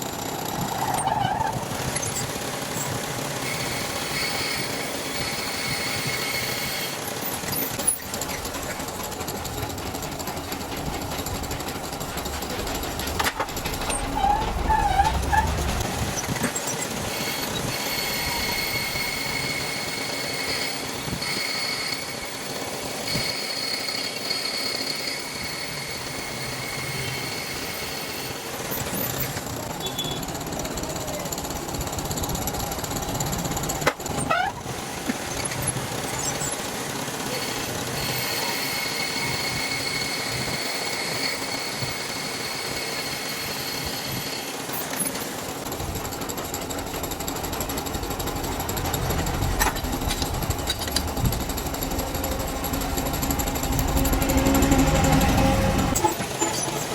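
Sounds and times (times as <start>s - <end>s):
metal lathe running: 0.0s - 56.9s
high cutting whine: 45.6s - 56.9s.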